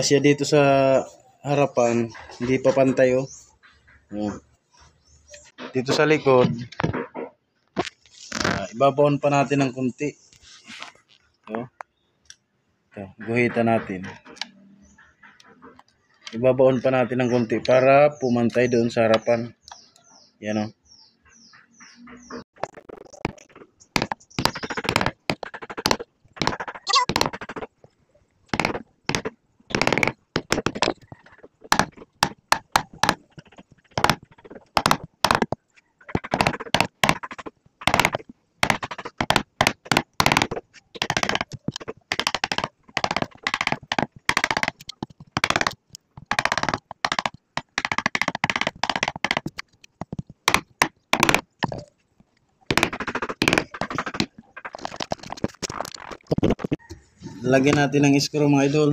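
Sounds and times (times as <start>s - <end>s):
wood cracking: 22.6s - 56.9s
chisel and hammer striking wood: 23.5s - 27.8s, 28.5s - 51.9s, 52.7s - 56.9s.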